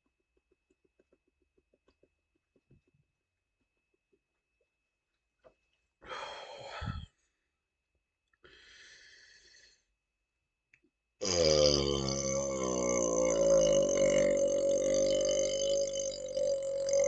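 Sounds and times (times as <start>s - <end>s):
person breathing heavily: 6.0s - 7.2s, 8.4s - 9.9s
loud low-pitched belch: 11.2s - 17.0s.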